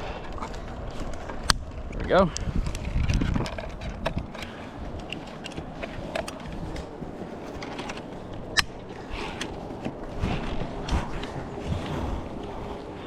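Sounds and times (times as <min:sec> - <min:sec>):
metal carabiners clinking: 0:03.4 - 0:10.5.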